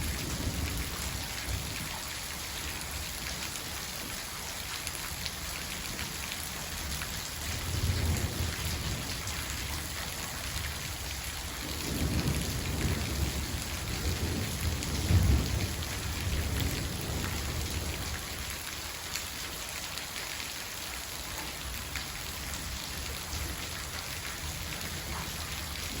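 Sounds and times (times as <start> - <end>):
rain falling: 0.0 - 26.0
thunder rolling: 11.7 - 18.0.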